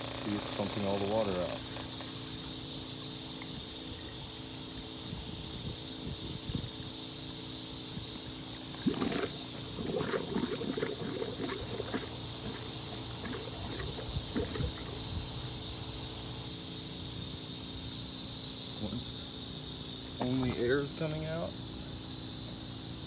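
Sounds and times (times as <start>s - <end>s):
air and water sputtering from pipe: 0.0s - 3.9s, 8.0s - 15.8s
motor hum: 0.0s - 5.8s, 7.6s - 16.6s.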